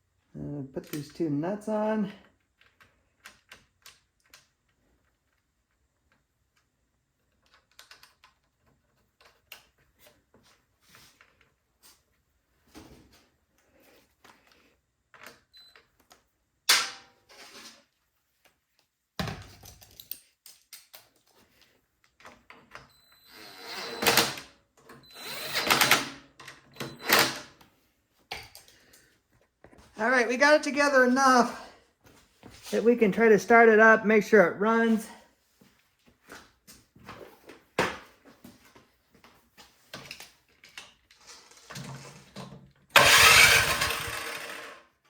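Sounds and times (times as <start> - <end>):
metal parts clicking and clattering: 43.0 - 44.8
metal rattling: 43.0 - 44.8.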